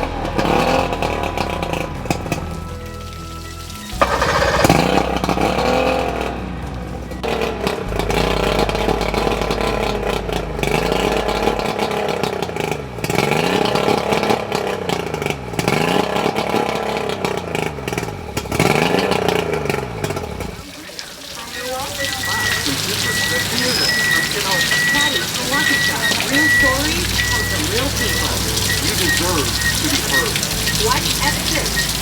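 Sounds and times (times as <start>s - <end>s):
outboard motor revving: 0.0s - 32.0s.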